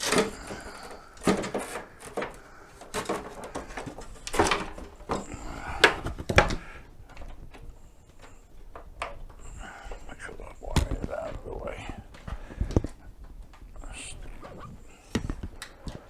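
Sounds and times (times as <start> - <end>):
knocks and clicks of handled parts: 0.0 - 16.0.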